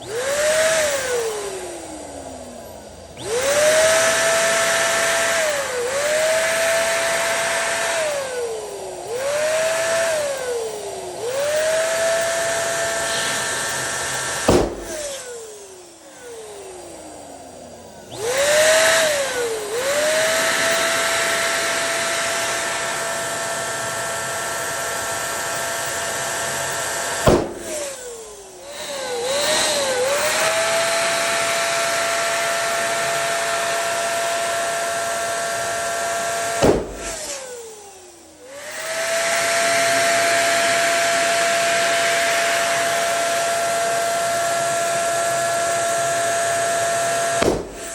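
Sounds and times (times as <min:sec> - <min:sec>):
electric balloon pump whining: 0:00.0 - 0:47.9
balloons bursting: 0:14.4 - 0:15.2, 0:27.2 - 0:27.9, 0:36.6 - 0:37.4, 0:47.4 - 0:47.9.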